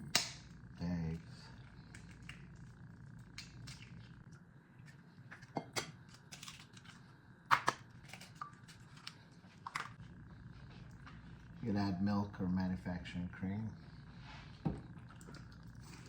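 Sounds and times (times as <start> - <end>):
eggs cracking against bowl: 1.8 - 10.0.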